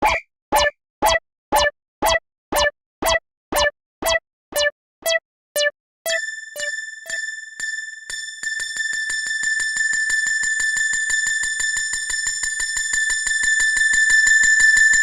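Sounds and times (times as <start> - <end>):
steady high ringing tone: 6.1 - 15.0.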